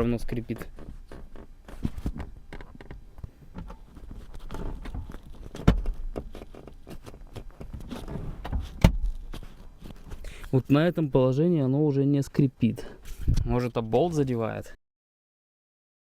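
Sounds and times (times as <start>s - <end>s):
seat locking thuds: 4.5s - 9.4s.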